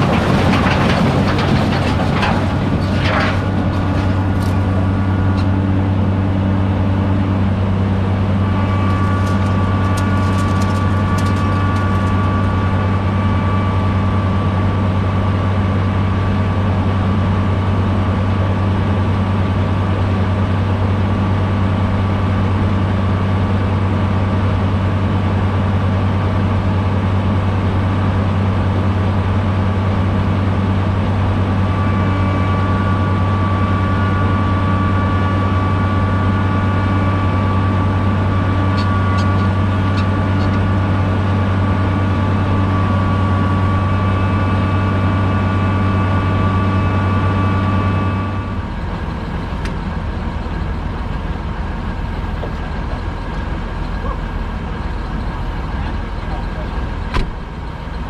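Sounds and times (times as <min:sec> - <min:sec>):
large diesel engine droning: 0:00.0 - 0:58.0.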